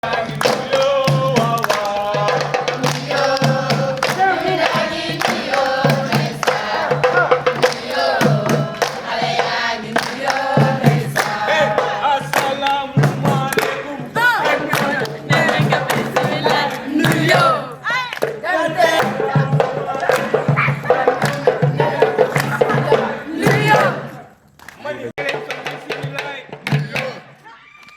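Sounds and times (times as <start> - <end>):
sharp percussive strokes: 0.0 - 17.5
low repeating beat: 0.0 - 17.7
group of voices singing: 0.0 - 27.5.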